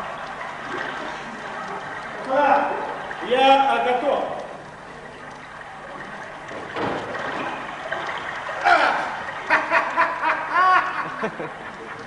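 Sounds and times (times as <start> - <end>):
person laughing: 8.6 - 12.0.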